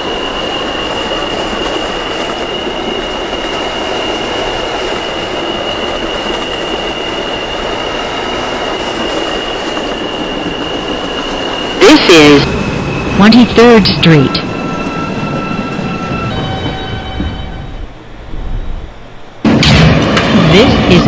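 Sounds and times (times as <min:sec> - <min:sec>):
high-pitched wheel squeal: 0:00.0 - 0:13.2, 0:14.3 - 0:17.9
subway train wheels rumbling: 0:00.0 - 0:21.0.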